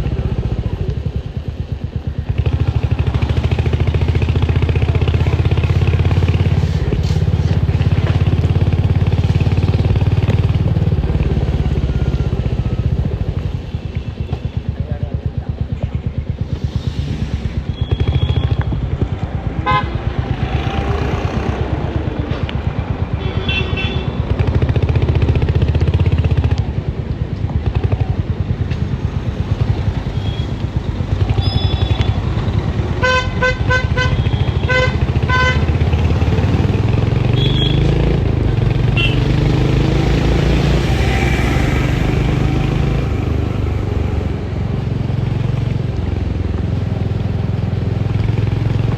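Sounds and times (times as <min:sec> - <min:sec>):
vehicle horns honking: 0:19.6 - 0:20.1, 0:23.2 - 0:24.2, 0:33.0 - 0:35.8, 0:37.3 - 0:37.9, 0:38.9 - 0:39.3.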